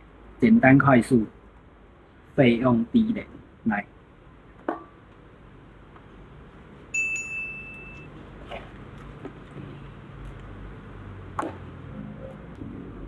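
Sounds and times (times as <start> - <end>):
low steady hum: 0.0 - 13.0
bright chime: 6.9 - 8.2.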